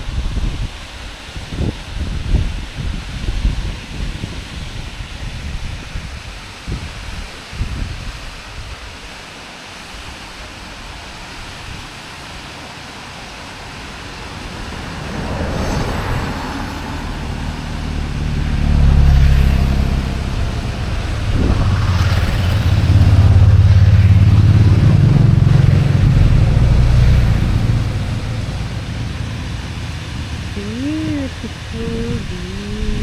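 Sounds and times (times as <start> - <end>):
motor vehicle passing: 13.8 - 33.0.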